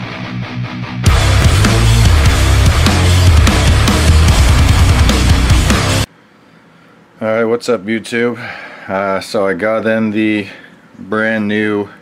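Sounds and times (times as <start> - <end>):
heavy metal music: 0.0 - 6.1.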